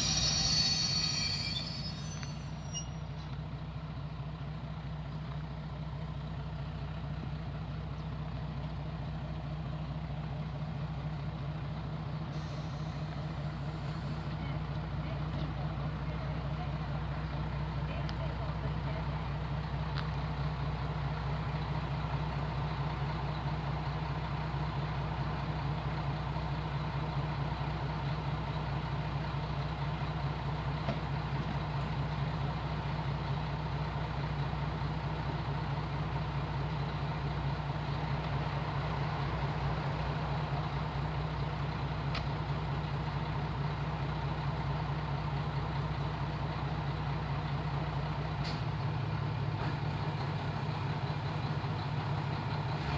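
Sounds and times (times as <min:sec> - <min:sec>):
engine idling: 0:00.0 - 0:52.9.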